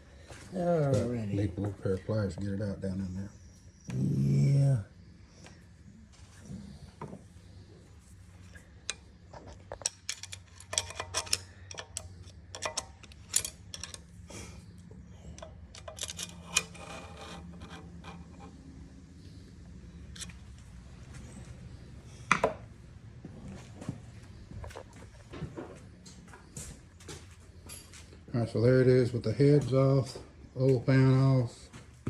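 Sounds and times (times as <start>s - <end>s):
steady low hum: 0.0s - 32.0s
hand tools clinking on engine parts: 8.8s - 18.6s.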